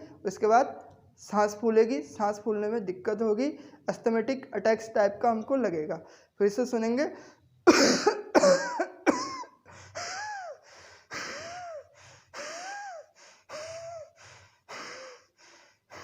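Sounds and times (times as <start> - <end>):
person coughing harshly: 7.7 - 10.6
wheezing gasps for air: 9.6 - 16.0.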